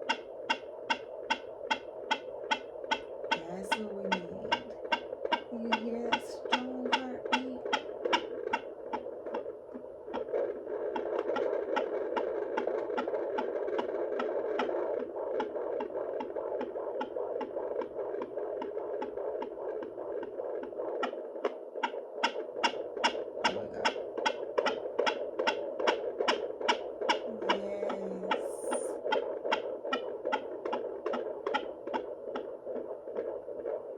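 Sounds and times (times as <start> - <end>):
fetal heartbeat on doppler monitor: 0.0 - 33.9.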